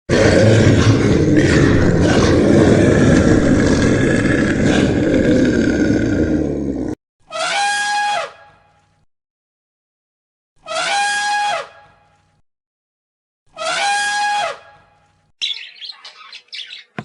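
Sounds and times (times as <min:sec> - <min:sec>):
animal roaring and grunting: 0:00.1 - 0:07.0.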